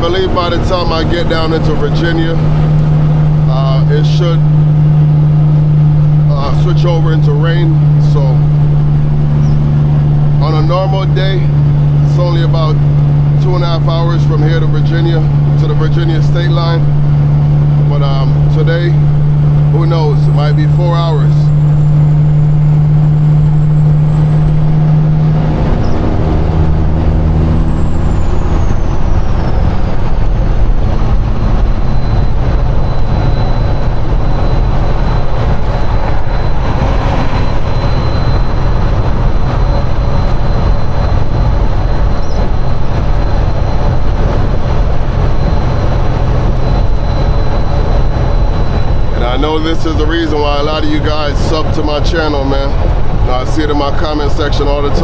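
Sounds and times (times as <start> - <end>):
diesel truck engine: 0.0 - 55.0
tyre and road rumble: 0.0 - 55.0.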